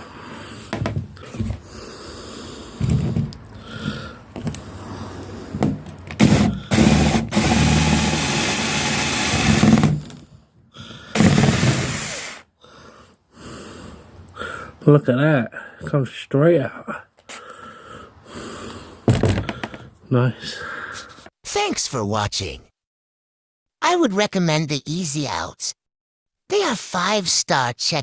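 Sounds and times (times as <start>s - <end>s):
power drill running: 6.2s - 10.2s, 11.2s - 12.4s.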